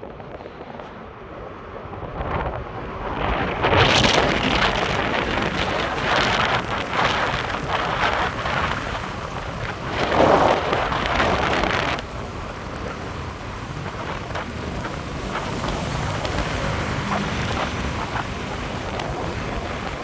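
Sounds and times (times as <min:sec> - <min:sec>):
road and engine rumble: 0:00.0 - 0:20.0
wind buffeting microphone: 0:00.0 - 0:20.0.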